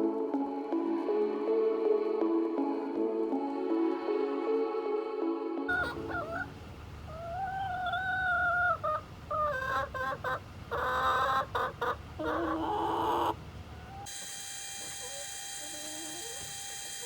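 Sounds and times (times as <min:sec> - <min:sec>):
low background rumble: 0:05.7 - 0:14.1
hens clucking: 0:05.7 - 0:16.6.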